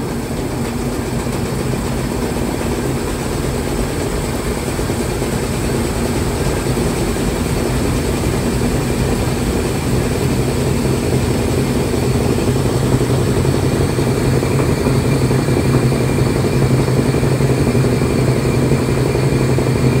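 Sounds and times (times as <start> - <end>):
washing machine motor hum: 0.0 - 20.0.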